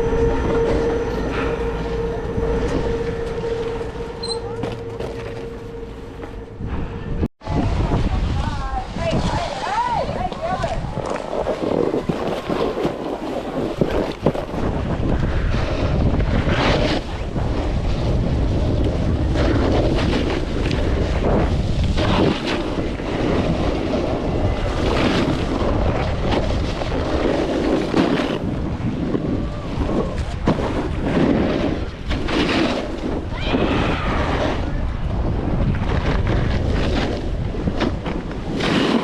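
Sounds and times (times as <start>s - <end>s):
wind buffeting microphone: 0.0s - 39.0s
snowboard scraping icy snow: 15.6s - 18.7s, 19.4s - 29.2s, 29.8s - 33.2s, 35.4s - 39.0s.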